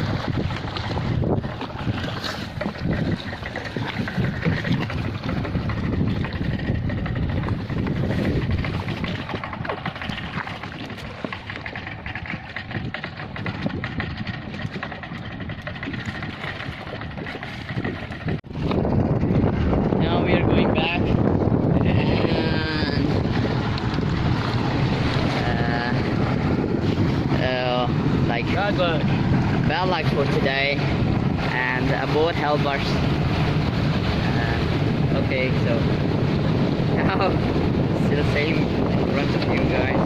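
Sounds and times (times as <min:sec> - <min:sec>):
boat engine running: 0:00.0 - 0:40.0
water noise: 0:00.0 - 0:40.0.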